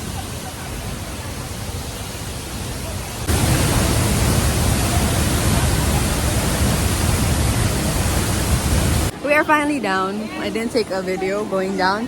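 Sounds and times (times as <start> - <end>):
waterfall rushing: 0.0 - 9.4.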